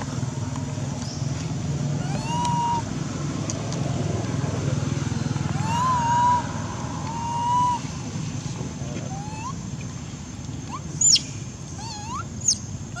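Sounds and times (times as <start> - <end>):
low engine-like drone: 0.0 - 13.0
baby monkey crying: 2.0 - 2.9, 5.6 - 7.9, 9.1 - 9.6, 11.8 - 13.0.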